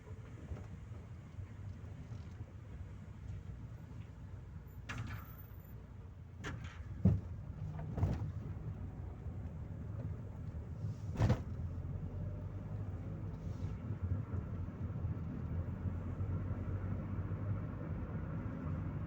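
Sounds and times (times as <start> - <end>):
car engine and road rumble: 0.0 - 19.0.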